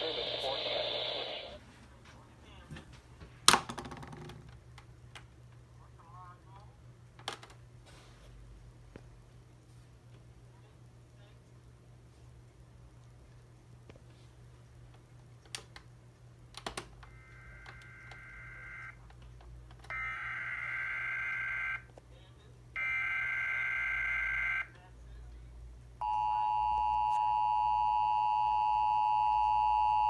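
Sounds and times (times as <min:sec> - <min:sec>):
faint hiss: 0:00.0 - 0:01.7
low steady hum: 0:04.3 - 0:30.0.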